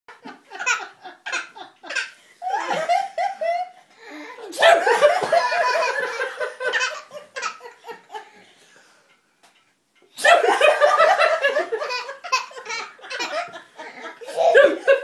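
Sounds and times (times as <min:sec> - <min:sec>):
person laughing: 0:12.5 - 0:15.0.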